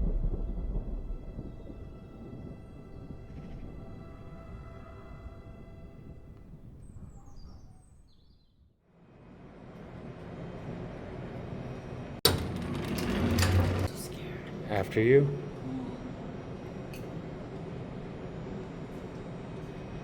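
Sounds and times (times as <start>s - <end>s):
sustained music tones: 0.0s - 6.6s
bird chirps: 6.8s - 8.7s.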